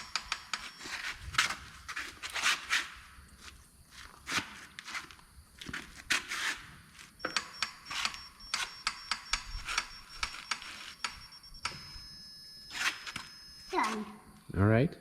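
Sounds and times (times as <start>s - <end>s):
metallic tool clicks: 0.0s - 0.8s.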